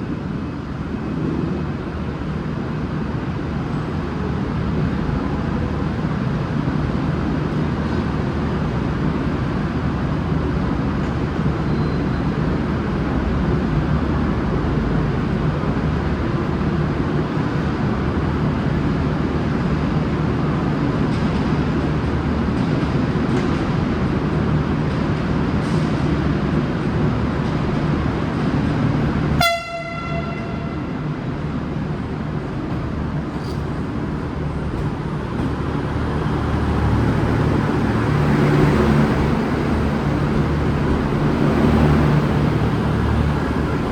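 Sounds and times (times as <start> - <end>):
diesel train running: 0.0 - 43.9
train horn blast: 29.4 - 31.1.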